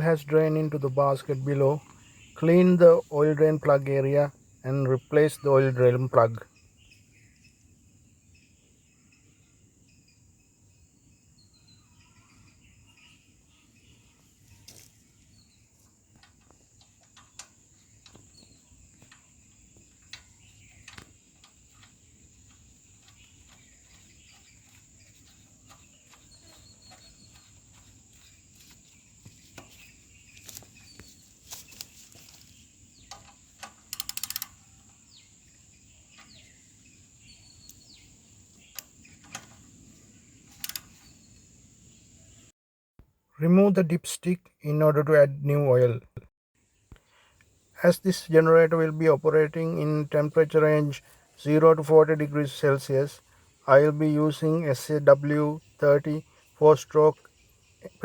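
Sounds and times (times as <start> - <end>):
high insect drone: 6.4 - 42.5
metallic clicks of spanner: 33.1 - 35.0, 40.5 - 41.1.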